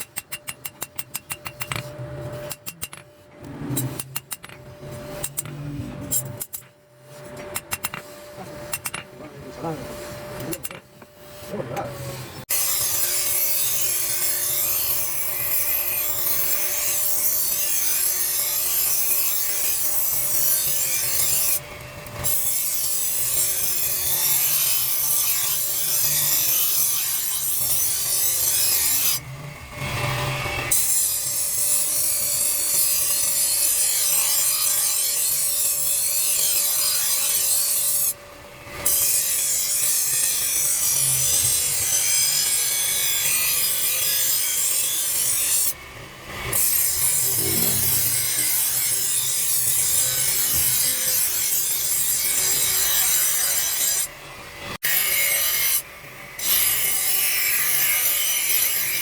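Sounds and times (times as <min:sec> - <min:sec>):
abrasive rubbing on knife: 0:46.9 - 0:48.8.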